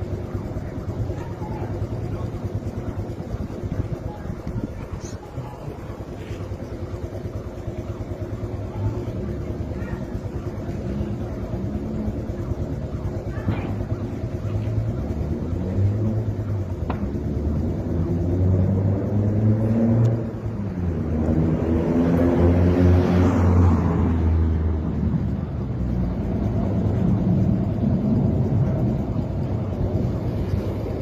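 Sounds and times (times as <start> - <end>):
vehicle engine rumbling past: 13.4 - 31.0.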